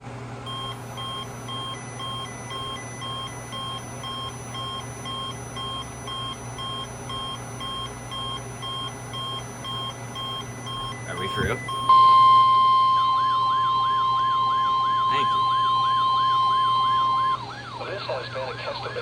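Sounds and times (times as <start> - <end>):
weather radio alarm beeping: 0.5 - 19.0.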